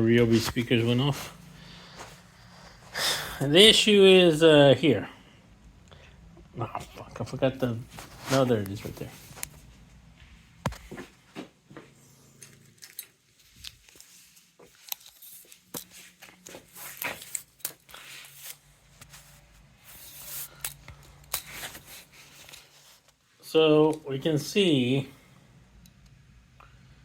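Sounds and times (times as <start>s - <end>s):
faint low hum: 0.0s - 27.0s
hands handling small parts: 7.6s - 9.7s, 12.3s - 23.2s.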